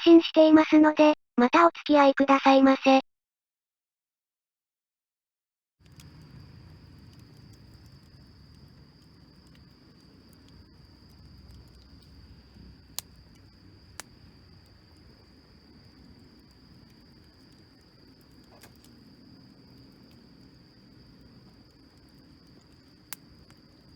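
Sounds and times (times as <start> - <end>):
insects chirring: 5.8 - 23.9.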